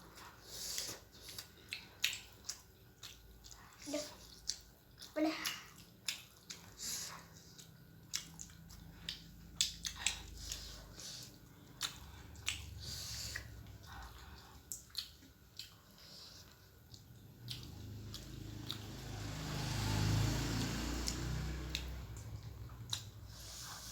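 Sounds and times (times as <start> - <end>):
person chewing and biting: 0.1 - 19.0
mouth clicks and smacks: 7.6 - 10.7.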